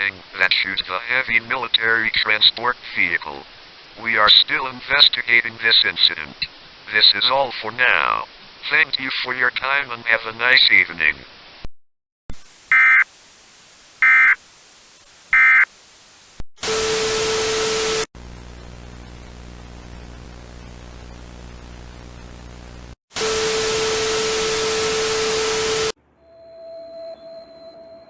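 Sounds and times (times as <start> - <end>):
loud static with steady tone: 12.3 - 26.0
digital data squawks: 12.7 - 13.0, 14.0 - 14.4, 15.3 - 15.7
low buzzing hum: 18.2 - 23.0.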